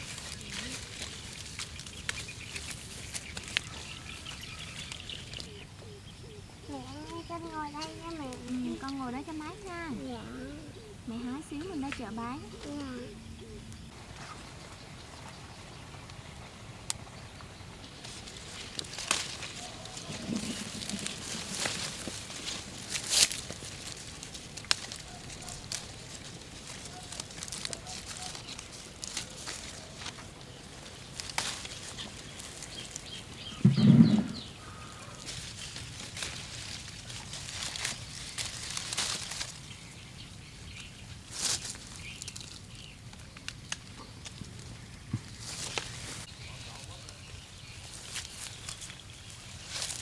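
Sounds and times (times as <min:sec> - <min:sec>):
snaps of fruit picking: 0:00.0 - 0:05.6, 0:16.8 - 0:39.6, 0:40.8 - 0:47.2
branches and leaves rustling: 0:00.0 - 0:50.0.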